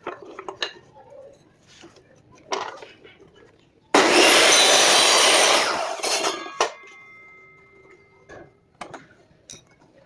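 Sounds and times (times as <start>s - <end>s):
miter saw spinning down: 4.0s - 6.3s
faint ringing whine: 6.0s - 8.8s.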